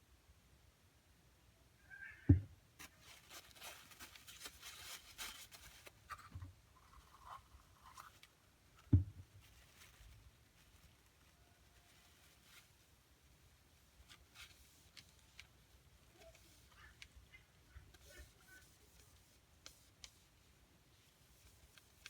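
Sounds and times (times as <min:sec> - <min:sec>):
dull thud on tabletop: 0:02.3 - 0:02.5, 0:08.9 - 0:09.2
soft rubbing and scratching: 0:02.8 - 0:22.0.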